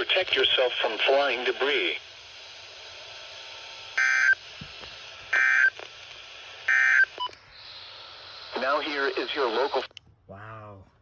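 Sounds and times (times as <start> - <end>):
faint radio hiss: 0.0 - 10.9
buzzy digital data bursts: 4.0 - 4.4, 6.7 - 9.9.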